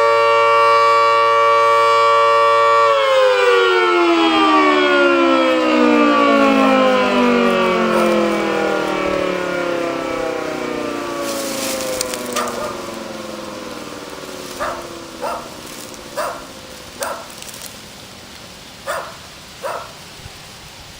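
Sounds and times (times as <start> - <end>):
siren winding down: 0.0 - 17.1
dog barking: 12.4 - 13.0, 14.5 - 17.4, 18.8 - 20.0.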